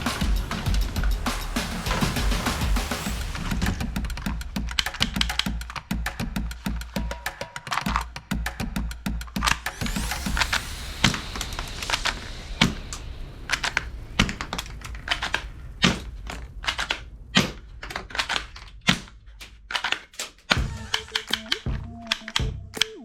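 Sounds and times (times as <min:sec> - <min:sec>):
plastic toy gun clicks: 0:18.2 - 0:23.0.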